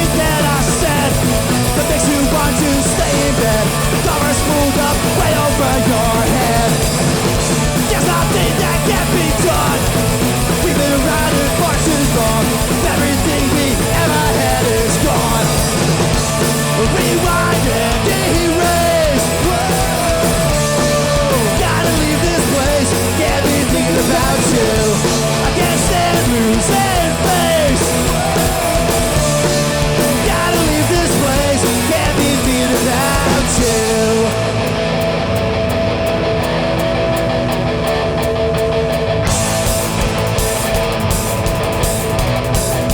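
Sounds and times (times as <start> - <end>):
bass: 0.0 - 42.9
distorted electric guitars: 0.0 - 42.9
drums: 0.0 - 42.9
shouted vocals: 16.7 - 34.2.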